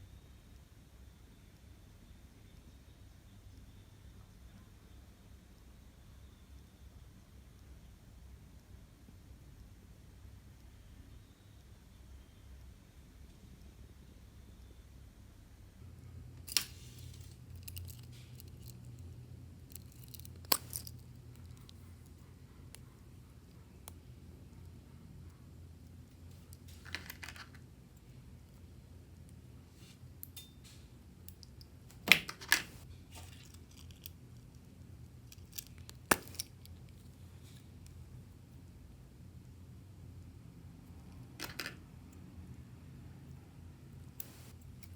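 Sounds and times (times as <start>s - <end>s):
small hard objects clicking: 16.4s - 19.1s, 19.7s - 21.9s, 35.3s - 37.0s.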